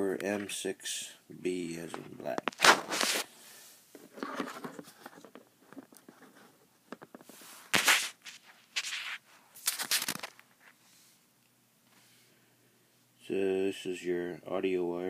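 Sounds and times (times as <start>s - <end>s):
rustling or scraping bursts: 1.9s - 11.1s.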